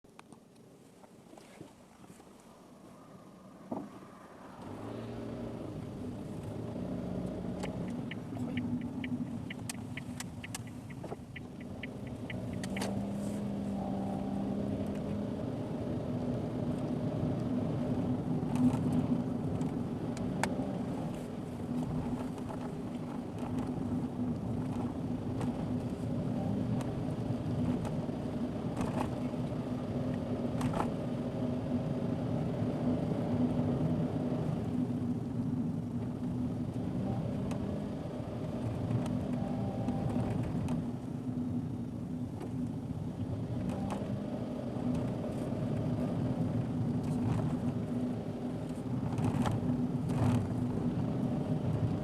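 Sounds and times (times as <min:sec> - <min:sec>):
car engine humming: 0:00.1 - 0:52.0
tyre and road noise: 0:00.1 - 0:52.0
sharp single clicks: 0:07.6 - 0:13.1
rapid even ticks: 0:07.6 - 0:13.2.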